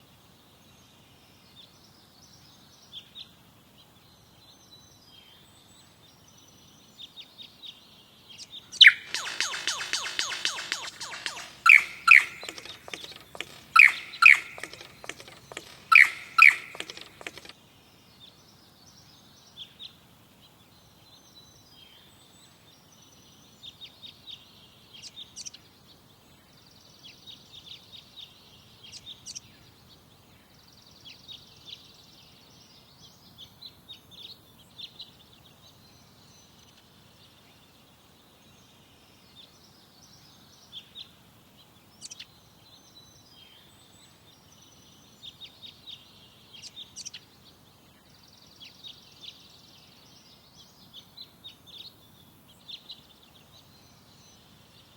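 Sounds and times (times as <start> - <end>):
lyrebird song: 8.4 - 17.5.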